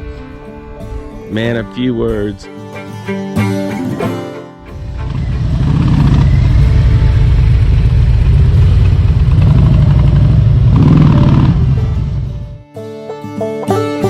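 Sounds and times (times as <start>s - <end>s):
loud motorcycle engine: 4.7s - 12.6s.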